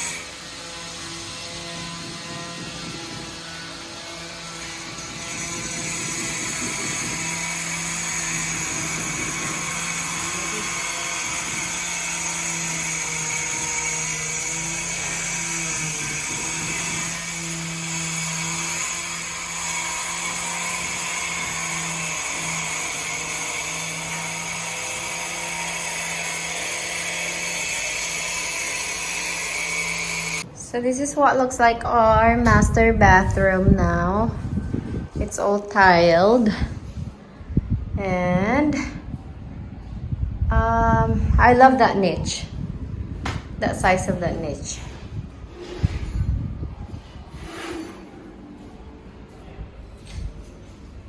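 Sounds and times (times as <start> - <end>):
power tool whining: 0.0 - 30.6.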